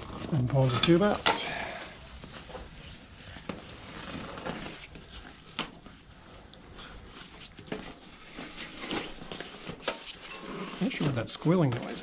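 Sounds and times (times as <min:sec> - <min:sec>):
air squealing through valve: 0:01.4 - 0:05.5.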